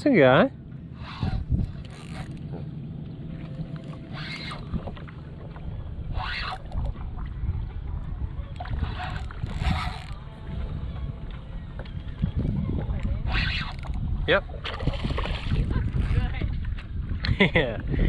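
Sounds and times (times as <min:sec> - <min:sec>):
wind and water rumble: 0:00.0 - 0:18.0.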